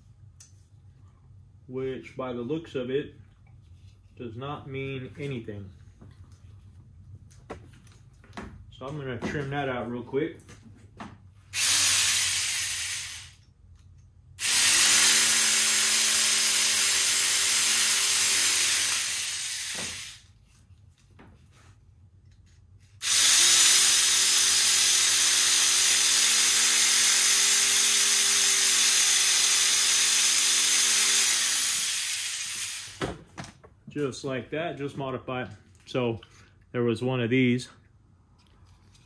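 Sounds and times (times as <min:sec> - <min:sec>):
power cutting tool hissing: 0:11.6 - 0:13.4, 0:14.4 - 0:20.2, 0:23.0 - 0:33.0.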